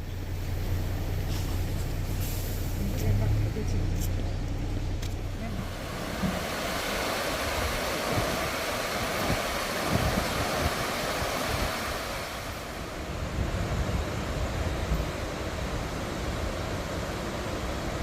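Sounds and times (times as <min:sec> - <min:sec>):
wind rumble on microphone: 0:02.8 - 0:18.0
stream rushing over rocks: 0:05.3 - 0:18.0.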